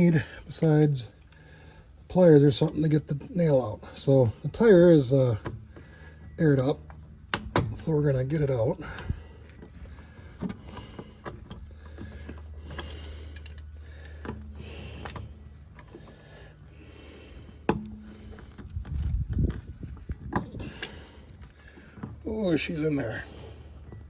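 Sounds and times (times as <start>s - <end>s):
low hum: 0.0s - 24.0s.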